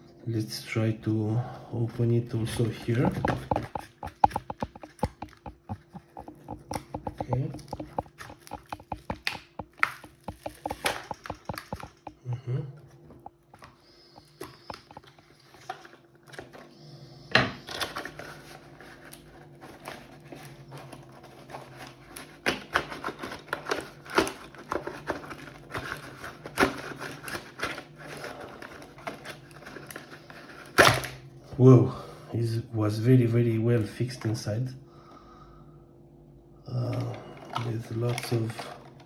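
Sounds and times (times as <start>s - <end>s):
packaging crinkling and clicking: 2.3s - 12.2s, 13.2s - 16.6s, 17.6s - 31.2s, 37.4s - 39.0s.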